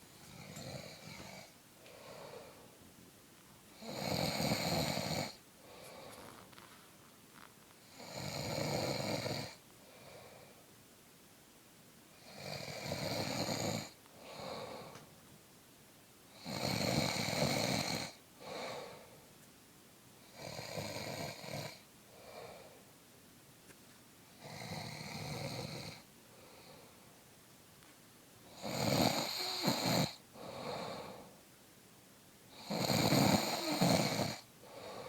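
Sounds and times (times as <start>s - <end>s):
man snoring: 0.3s - 1.5s, 3.8s - 5.4s, 7.9s - 9.6s, 12.3s - 14.9s, 16.4s - 18.8s, 20.4s - 21.8s, 24.4s - 26.0s, 28.6s - 31.1s, 32.6s - 35.0s.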